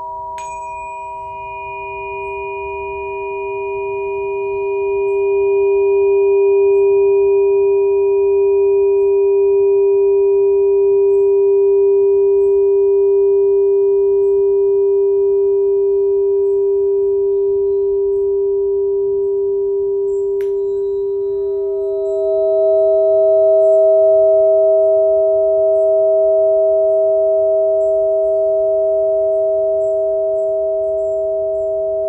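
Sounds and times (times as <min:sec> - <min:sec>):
tap with higher ringing tone: 0:00.0 - 0:06.3, 0:20.4 - 0:26.8
sustained ringing tone: 0:00.0 - 0:32.0.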